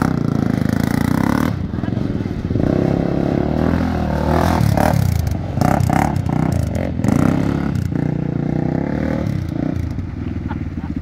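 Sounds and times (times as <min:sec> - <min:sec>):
atv engine revving: 0:00.0 - 0:11.0.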